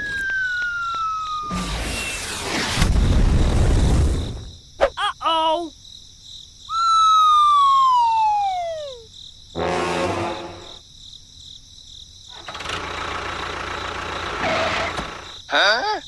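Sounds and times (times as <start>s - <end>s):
comic falling sound effect: 0.0s - 4.1s, 6.7s - 9.0s.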